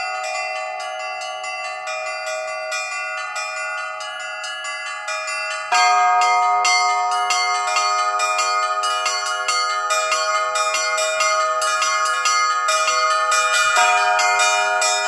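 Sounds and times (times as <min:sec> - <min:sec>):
small church bells chiming: 0:00.0 - 0:15.0.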